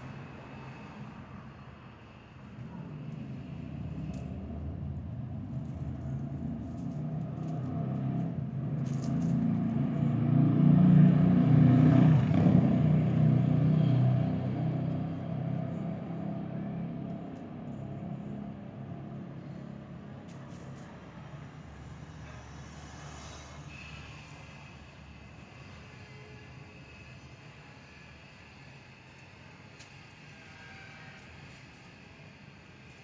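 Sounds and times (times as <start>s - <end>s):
vehicle engine rumble passing: 2.5s - 25.3s.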